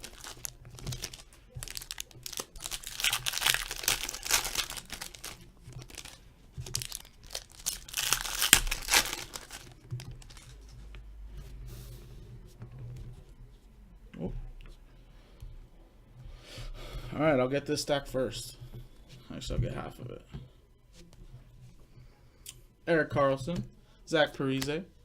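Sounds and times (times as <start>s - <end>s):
card packs being torn open: 0.0s - 10.7s
wrappers crumpled: 0.0s - 10.8s.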